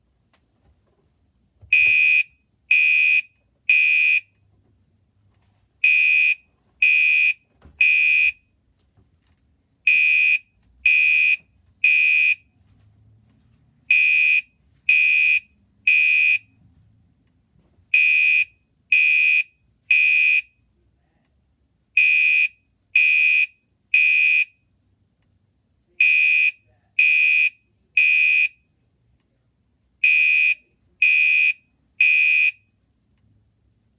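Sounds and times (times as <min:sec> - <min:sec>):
fire alarm horn: 0:01.7 - 0:04.4, 0:05.8 - 0:08.4, 0:09.9 - 0:12.5, 0:13.9 - 0:16.4, 0:17.9 - 0:20.5, 0:22.0 - 0:24.6, 0:26.0 - 0:28.6, 0:30.0 - 0:32.6.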